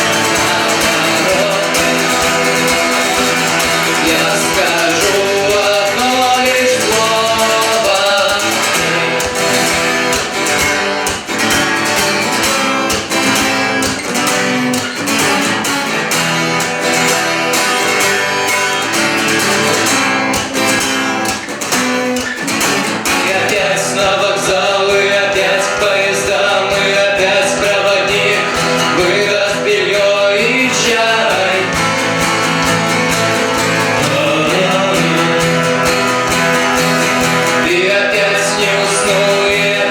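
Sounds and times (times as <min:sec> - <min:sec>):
person singing: 0:00.0 - 0:10.6, 0:23.0 - 0:32.5, 0:33.5 - 0:39.9
acoustic guitar strumming: 0:00.0 - 0:39.9.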